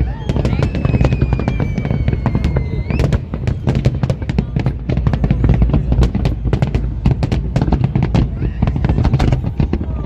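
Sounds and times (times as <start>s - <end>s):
fireworks bangs and crackles: 0.0s - 10.0s.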